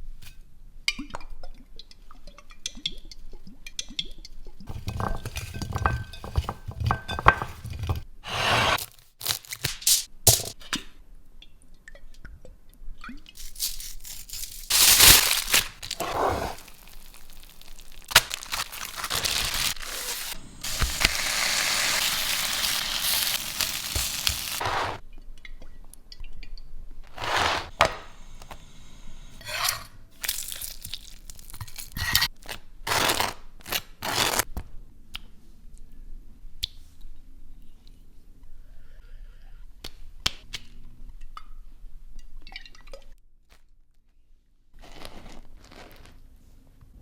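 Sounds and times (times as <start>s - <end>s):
cutting and handling food: 4.7s - 10.5s, 13.4s - 25.0s, 27.0s - 28.2s, 29.4s - 34.5s, 44.8s - 46.3s
steady hiss: 19.8s - 25.0s.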